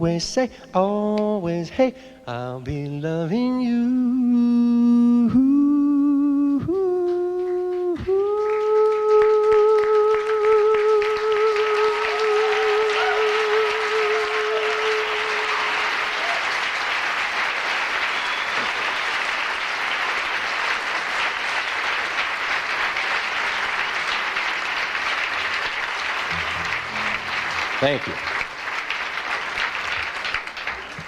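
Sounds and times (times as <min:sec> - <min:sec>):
man singing with vibrato: 0:00.0 - 0:15.8
audience applause: 0:07.8 - 0:31.0.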